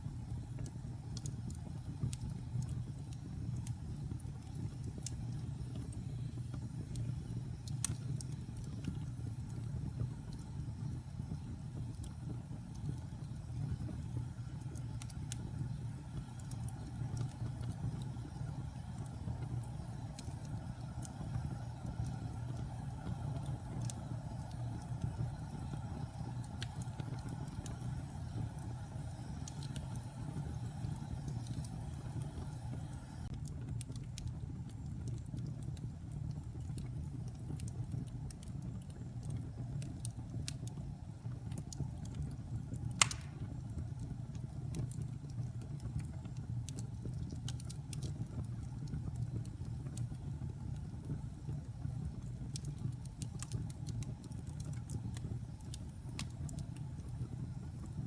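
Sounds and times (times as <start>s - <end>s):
fire crackling: 0.0s - 58.0s
fire flames rumbling: 0.0s - 58.0s
loud sharp pop: 43.0s - 43.5s.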